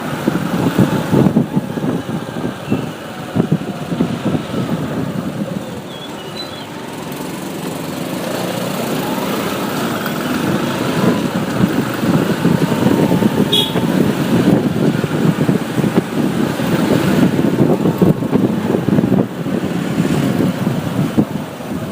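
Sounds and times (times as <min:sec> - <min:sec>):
motorcycle engine and road rumble: 0:00.0 - 0:21.9
high-pitched chirp: 0:05.9 - 0:06.8.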